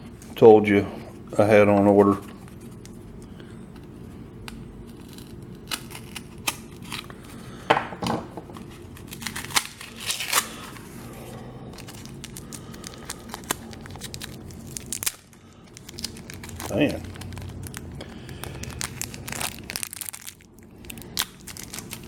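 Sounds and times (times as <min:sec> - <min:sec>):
low steady hum: 0:00.0 - 0:22.0
packaging crinkling and tearing: 0:04.5 - 0:07.6, 0:08.6 - 0:11.0, 0:11.7 - 0:22.0.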